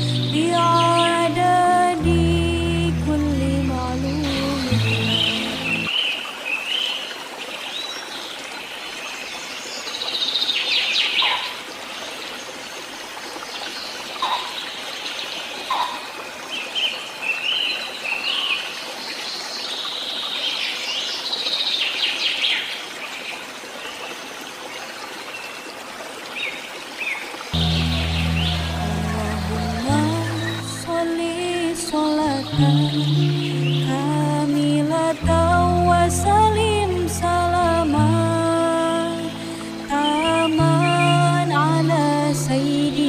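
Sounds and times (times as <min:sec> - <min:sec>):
music: 0:00.0 - 0:05.9, 0:27.6 - 0:43.0
running water: 0:00.0 - 0:43.0
birds chirping and singing: 0:03.8 - 0:06.0, 0:27.6 - 0:31.0.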